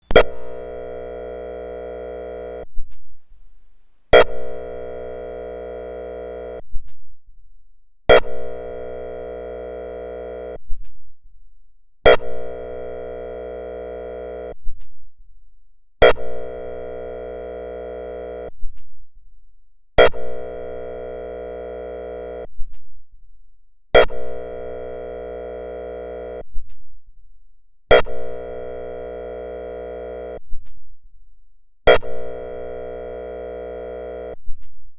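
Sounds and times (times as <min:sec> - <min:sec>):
buzzy electronic horn blasts: 0:00.0 - 0:02.7, 0:04.1 - 0:06.6, 0:08.1 - 0:10.6, 0:12.1 - 0:14.6, 0:16.0 - 0:18.5, 0:20.0 - 0:22.5, 0:24.0 - 0:26.4, 0:27.9 - 0:30.4, 0:31.9 - 0:34.4
siren click: 0:00.0 - 0:03.0, 0:04.1 - 0:06.6, 0:08.1 - 0:10.6, 0:12.1 - 0:14.6, 0:16.0 - 0:18.5, 0:20.0 - 0:22.5, 0:24.0 - 0:26.5, 0:31.9 - 0:34.7.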